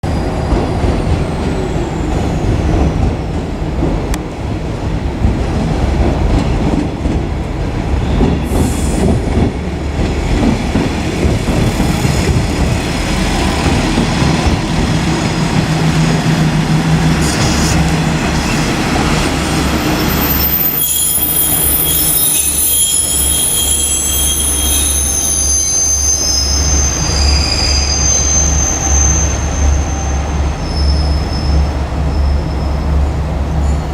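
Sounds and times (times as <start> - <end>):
high-pitched wheel squeal: 20.0 - 32.8.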